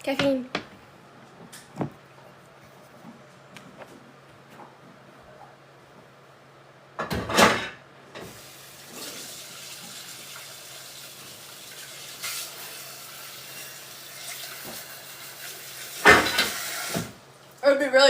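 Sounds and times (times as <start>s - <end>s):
water running from tap into sink: 8.3s - 17.1s.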